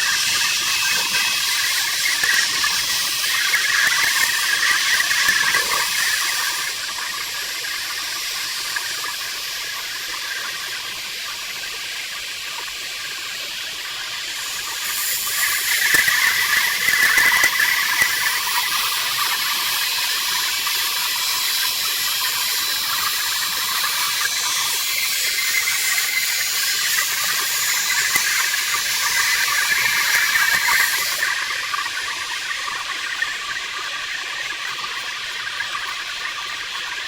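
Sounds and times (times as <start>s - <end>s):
metal lathe cutting: 0.0s - 9.0s, 14.2s - 32.0s.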